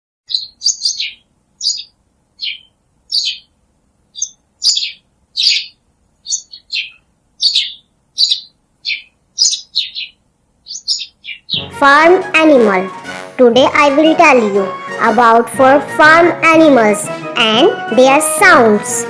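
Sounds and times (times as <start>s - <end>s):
small bird chirping: 0.3s - 11.6s.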